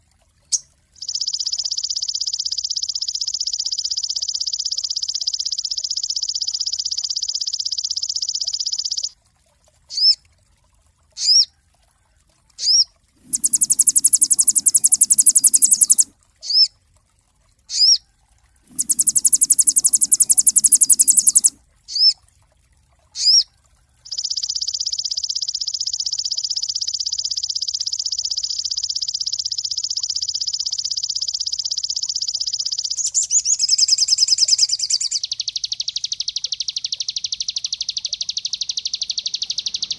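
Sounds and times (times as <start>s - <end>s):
bird high rapid trill: 12.6s - 16.7s, 18.7s - 22.1s, 32.8s - 35.3s
bird buzzy rattles: 13.2s - 16.1s, 18.7s - 21.5s
bird sharp rising chips: 13.2s - 16.1s, 18.7s - 21.6s.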